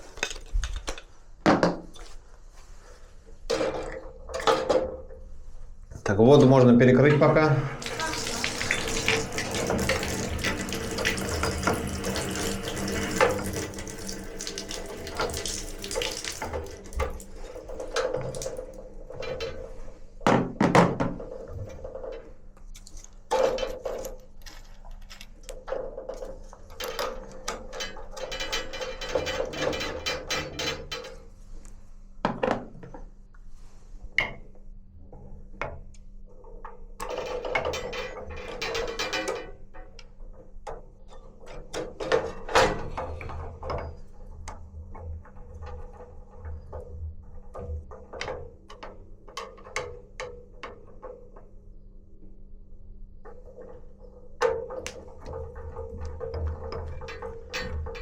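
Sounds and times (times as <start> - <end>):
water running: 6.1 - 19.8.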